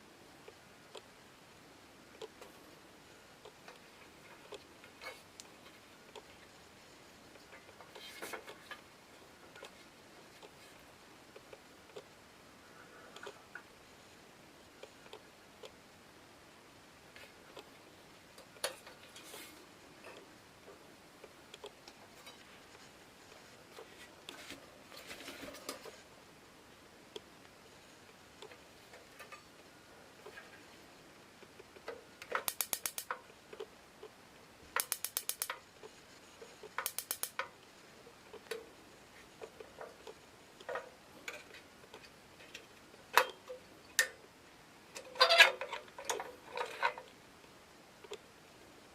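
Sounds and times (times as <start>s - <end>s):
lantern parts clicking: 31.4s - 34.2s, 34.8s - 37.6s, 39.4s - 44.2s
rapid clicking bursts: 32.3s - 33.2s, 34.8s - 36.0s, 36.6s - 37.5s.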